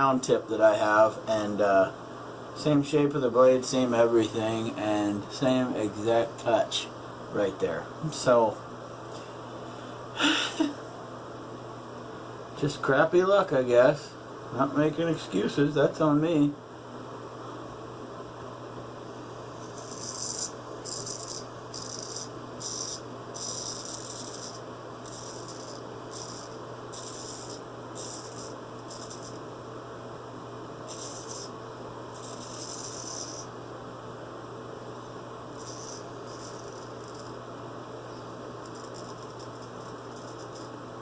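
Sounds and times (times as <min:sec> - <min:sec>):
razor scraping stubble: 0:19.6 - 0:29.4, 0:30.9 - 0:33.5, 0:35.6 - 0:37.4, 0:38.1 - 0:40.8.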